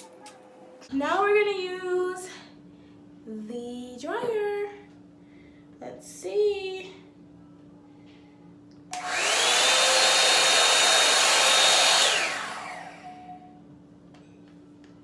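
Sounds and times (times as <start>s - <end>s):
hair dryer whine and air rush: 8.9s - 13.5s.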